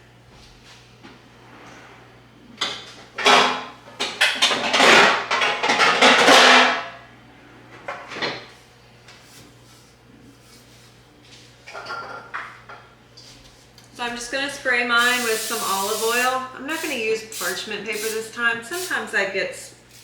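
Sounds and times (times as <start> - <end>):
baking pans clattering and scraping: 2.6 - 7.0, 11.6 - 12.8.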